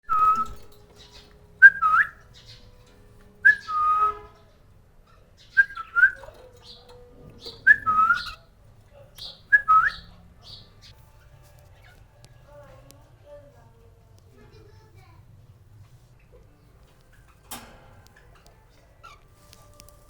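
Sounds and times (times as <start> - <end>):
cockatiel whistling: 0.1 - 0.7, 1.6 - 2.5, 3.4 - 4.2, 5.5 - 6.2, 7.6 - 8.4, 9.5 - 10.1.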